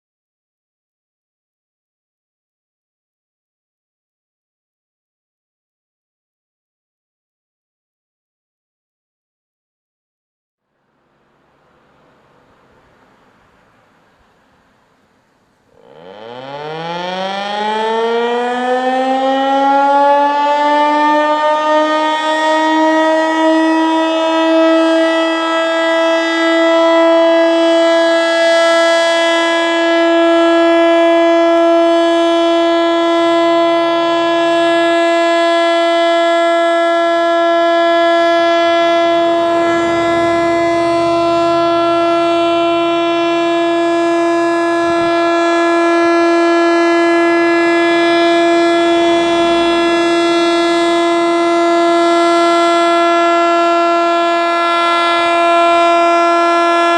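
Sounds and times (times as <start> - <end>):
warning siren steady tone: 15.7 - 56.9.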